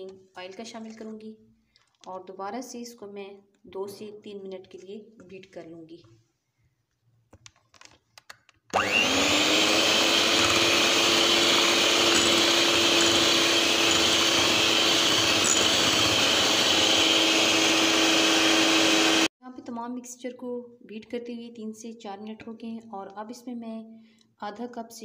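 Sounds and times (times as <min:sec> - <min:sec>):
electric beater motor running: 0:08.8 - 0:19.3.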